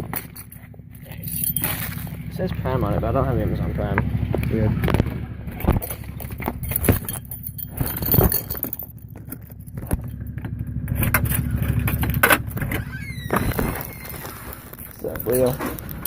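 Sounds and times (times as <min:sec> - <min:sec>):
sharp clinks and knocks: 0:00.0 - 0:02.1, 0:05.7 - 0:12.8
keys jangling: 0:00.0 - 0:02.2, 0:05.8 - 0:12.8, 0:13.4 - 0:16.0
low steady rumble: 0:00.0 - 0:16.0.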